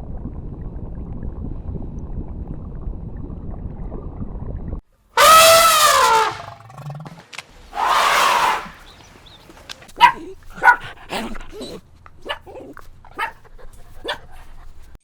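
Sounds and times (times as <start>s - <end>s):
low steady rumbling: 0.0s - 4.8s
animal call falling in pitch: 5.2s - 7.1s, 7.7s - 9.1s.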